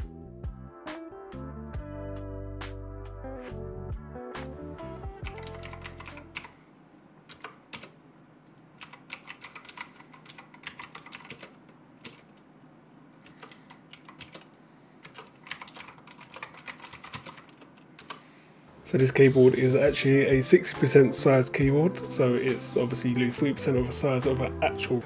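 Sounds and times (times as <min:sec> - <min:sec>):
background music: 0:00.0 - 0:06.5, 0:18.8 - 0:25.0
mechanical keyboard keys clicking: 0:05.2 - 0:06.5, 0:07.3 - 0:08.0, 0:08.8 - 0:12.3, 0:13.3 - 0:18.2.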